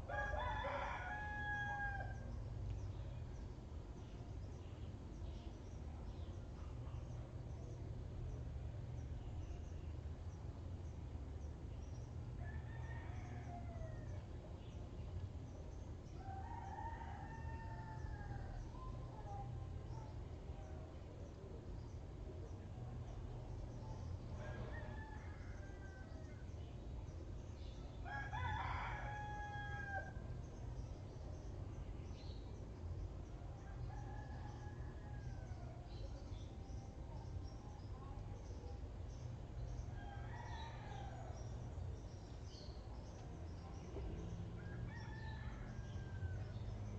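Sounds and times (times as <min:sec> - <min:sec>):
rooster crowing: 0:00.0 - 0:02.3, 0:16.2 - 0:18.6, 0:24.4 - 0:26.2, 0:28.0 - 0:30.2, 0:44.6 - 0:46.7
low background rumble: 0:01.0 - 0:28.4, 0:29.0 - 0:46.9.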